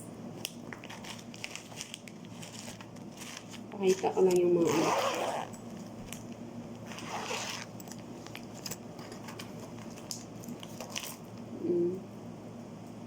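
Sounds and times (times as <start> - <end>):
plastic packaging crinkling: 0.4 - 8.8, 9.6 - 11.4.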